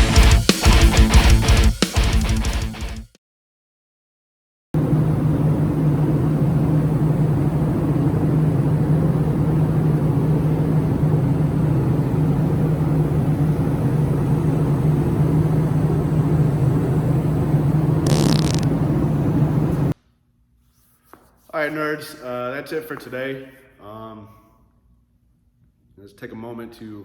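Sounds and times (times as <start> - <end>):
low mechanical drone: 4.8 - 20.0
brief noisy burst: 18.0 - 18.8.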